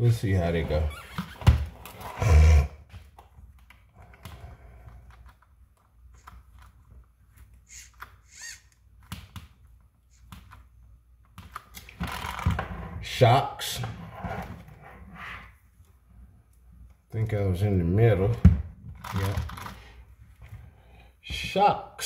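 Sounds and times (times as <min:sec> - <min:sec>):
high squeak: 0:07.7 - 0:08.7.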